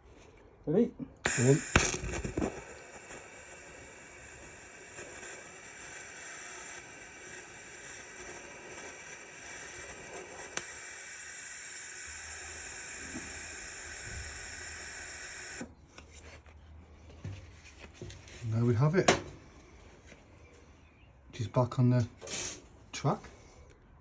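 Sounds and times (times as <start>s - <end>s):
electric welder crackling hiss: 1.2s - 15.7s.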